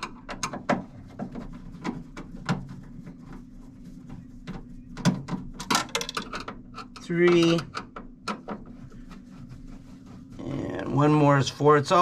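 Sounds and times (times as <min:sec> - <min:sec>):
steady low hum: 0:00.1 - 0:12.0.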